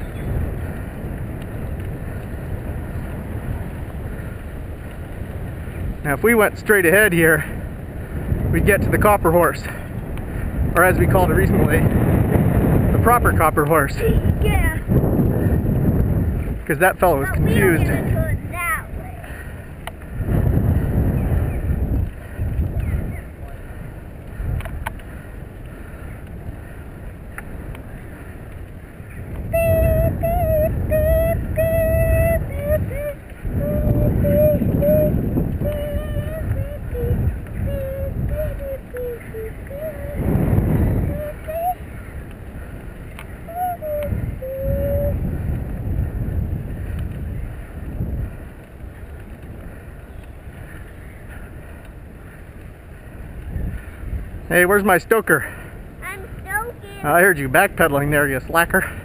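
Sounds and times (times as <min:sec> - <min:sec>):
wind buffeting microphone: 0:00.0 - 0:59.0
high wavering tone: 0:29.5 - 0:40.3.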